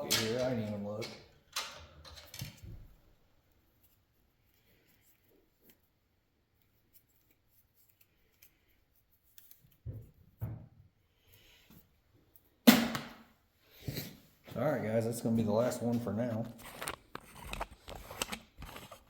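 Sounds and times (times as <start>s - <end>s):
loud sharp knock: 12.7s - 13.2s
wire stripper scraping cable: 16.4s - 19.0s.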